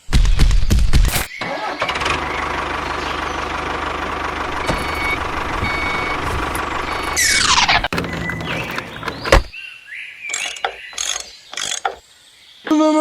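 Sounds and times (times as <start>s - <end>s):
truck engine running: 1.4s - 9.5s
reversing beeper: 4.5s - 7.9s.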